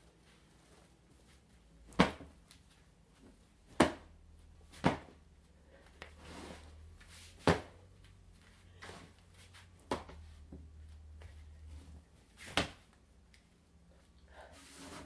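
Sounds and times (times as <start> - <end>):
quiet drawn-out noise: 0.0 - 15.0
dull thumps on stuffed animal: 4.7 - 5.2.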